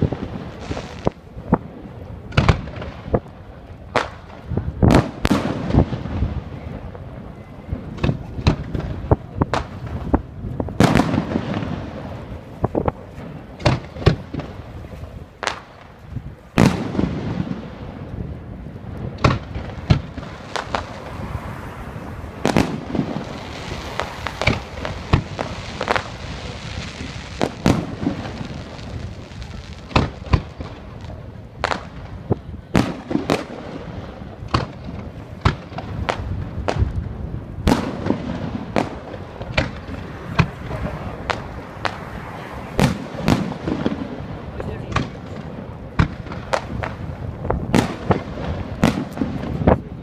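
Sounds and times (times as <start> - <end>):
firework shells bursting: 22.4 - 32.2.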